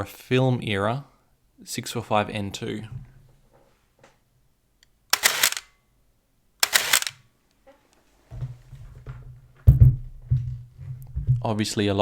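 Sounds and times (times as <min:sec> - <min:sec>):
camera shutter release: 0:05.2 - 0:05.7, 0:06.6 - 0:07.2
motor winder whirring: 0:05.2 - 0:05.7, 0:06.6 - 0:07.2.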